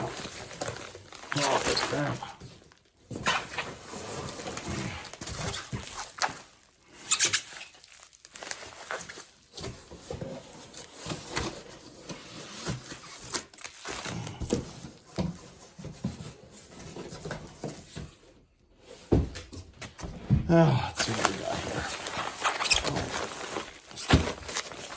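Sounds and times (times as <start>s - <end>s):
bubble wrap crinkling: 0.0s - 9.7s, 10.6s - 14.4s, 20.7s - 24.9s.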